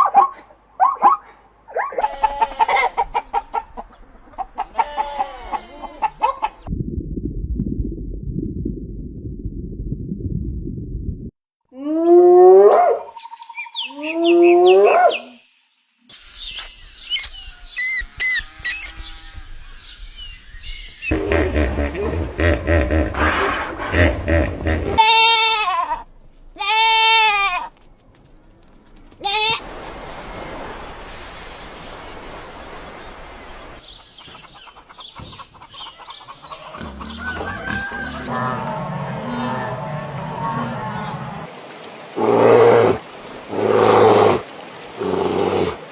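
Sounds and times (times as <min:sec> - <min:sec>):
farm animal calls: 0:00.0 - 0:06.6, 0:34.2 - 0:41.4
low hum: 0:06.7 - 0:11.4.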